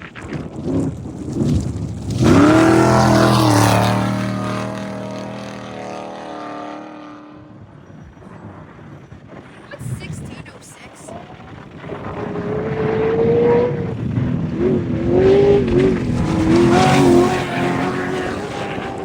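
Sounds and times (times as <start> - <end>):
race vehicle engine accelerating past: 0.7 - 7.7, 11.8 - 19.0.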